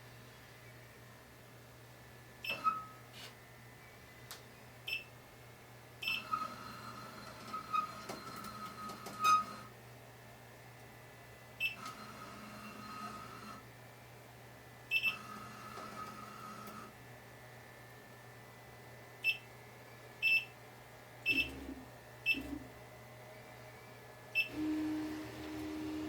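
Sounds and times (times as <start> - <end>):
steady low hum: 9.6 - 26.0.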